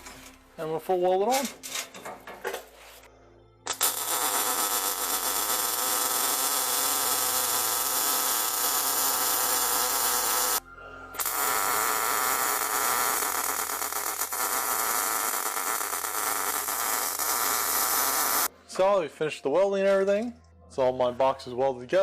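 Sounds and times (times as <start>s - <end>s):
welding arc crackling hiss: 3.7s - 10.6s, 11.2s - 18.5s.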